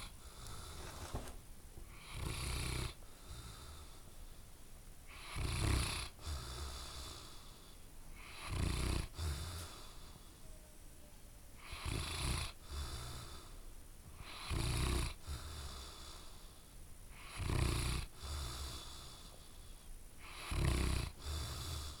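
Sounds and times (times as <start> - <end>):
dog snoring: 1.9 - 4.0, 5.1 - 7.6, 8.2 - 10.0, 11.6 - 13.5, 14.2 - 16.3, 17.1 - 19.3, 20.2 - 22.0.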